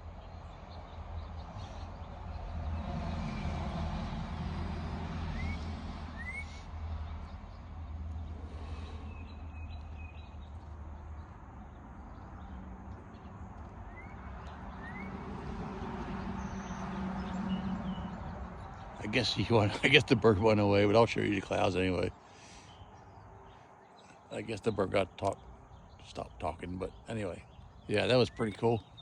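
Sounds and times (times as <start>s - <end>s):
songbird rising whistled notes: 5.3s - 6.7s, 13.9s - 15.2s.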